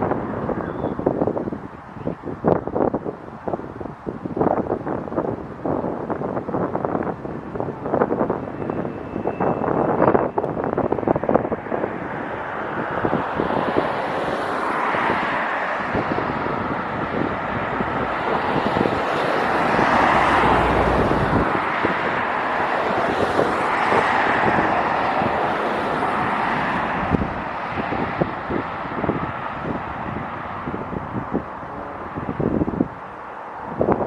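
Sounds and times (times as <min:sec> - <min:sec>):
wind buffeting microphone: 0:00.0 - 0:34.0
jet engines rushing: 0:08.4 - 0:34.0.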